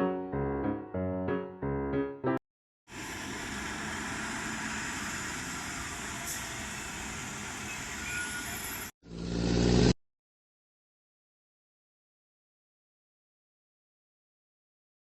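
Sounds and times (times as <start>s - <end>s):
street traffic rushing: 2.9s - 10.0s.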